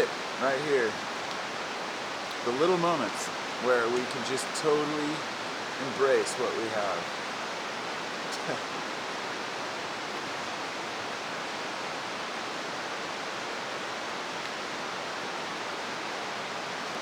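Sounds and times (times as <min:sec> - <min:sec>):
river water rushing: 0:00.0 - 0:17.0.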